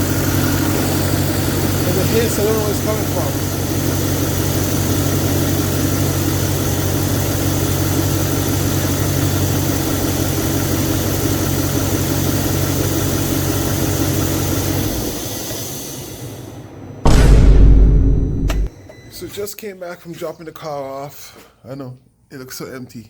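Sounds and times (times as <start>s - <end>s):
vacuum leak hiss: 0.0s - 16.5s
car engine idling: 0.0s - 18.7s.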